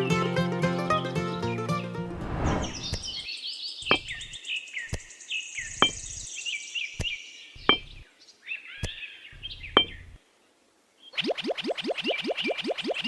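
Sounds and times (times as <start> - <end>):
small birds chirping: 2.6 - 13.0
sharp clicks or taps: 3.9 - 4.2, 5.8 - 6.2, 7.0 - 8.0.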